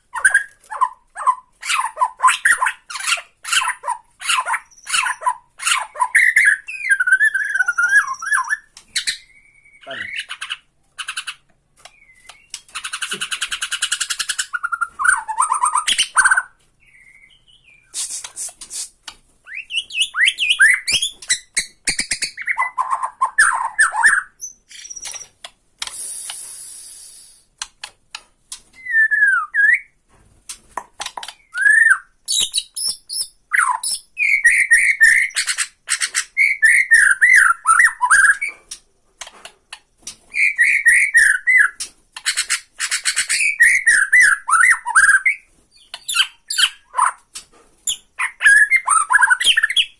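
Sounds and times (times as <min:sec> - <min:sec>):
bird whistled song: 0:03.5 - 0:10.1, 0:14.0 - 0:18.5, 0:19.5 - 0:25.3, 0:28.8 - 0:30.0, 0:31.4 - 0:38.5, 0:40.3 - 0:47.2, 0:47.9 - 0:49.9.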